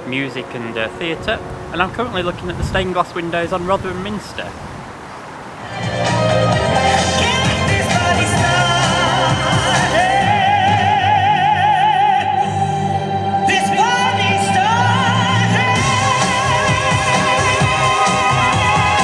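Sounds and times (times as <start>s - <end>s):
operatic singing: 5.6s - 19.0s.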